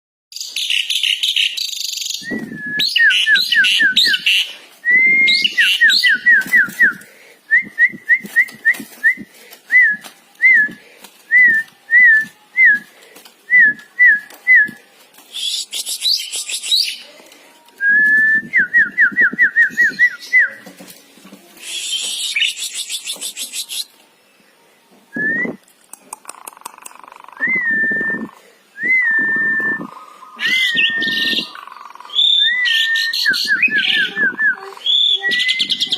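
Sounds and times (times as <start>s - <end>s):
songbirds singing: 29.6s - 35.9s.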